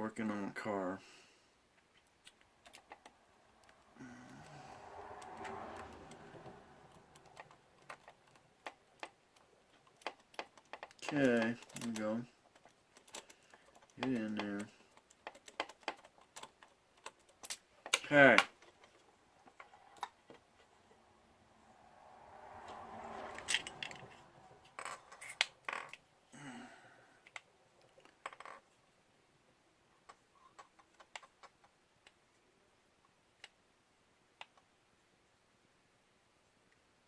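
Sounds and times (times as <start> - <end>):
rustling of small parts: 1.7 - 20.9.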